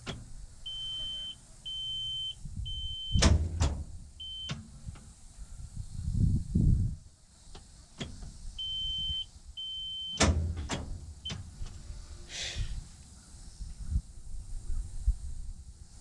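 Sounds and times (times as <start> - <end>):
high-pitched beeps: 0.7 - 3.2.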